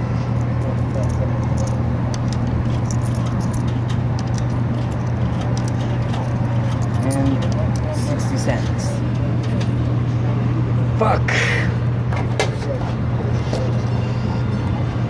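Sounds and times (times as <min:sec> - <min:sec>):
steady low hum: 0:00.0 - 0:15.0
vending machine clicks and clinks: 0:00.4 - 0:10.0.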